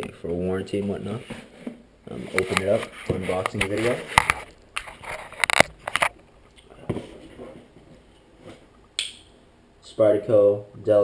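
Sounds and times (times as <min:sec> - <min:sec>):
faint rustling: 0:00.8 - 0:09.0.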